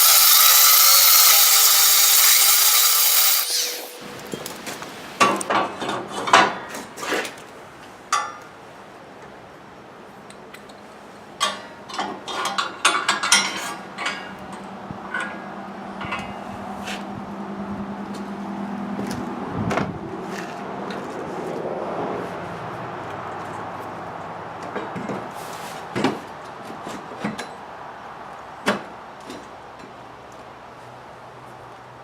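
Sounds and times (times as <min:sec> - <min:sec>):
metal clanks and knocks: 0:05.2 - 0:06.9, 0:11.4 - 0:16.6.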